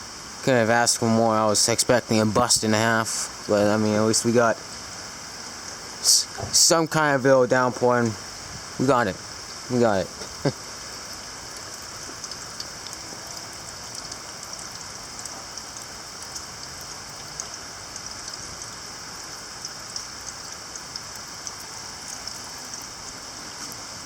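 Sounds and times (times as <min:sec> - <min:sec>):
rain falling: 0:00.0 - 0:24.0
raindrop ticks: 0:10.1 - 0:23.8.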